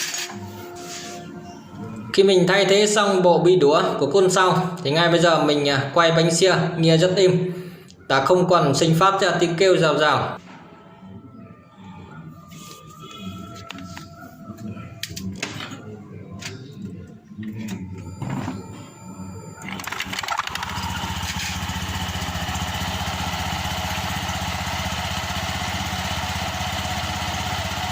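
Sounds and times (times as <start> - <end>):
scooter engine starting and idling: 19.6 - 27.9.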